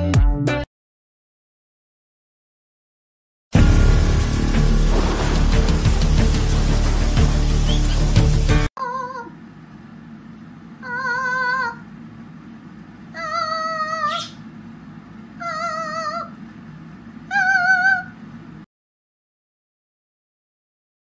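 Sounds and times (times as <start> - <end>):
parrot singing with vibrato: 10.8 - 11.8, 13.1 - 14.4, 15.4 - 16.4, 17.3 - 18.2.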